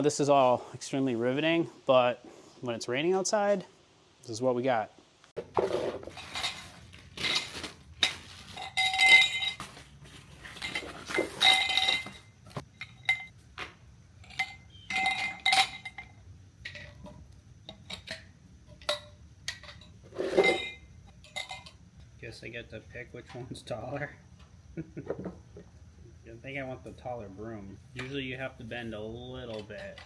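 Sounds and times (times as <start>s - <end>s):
light metal objects clinking: 6.0s - 22.2s, 29.1s - 30.0s.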